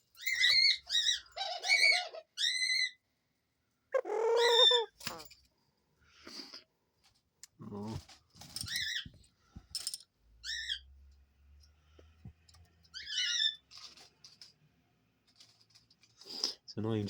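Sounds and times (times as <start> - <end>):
high wavering bird calls: 4.0 - 5.2.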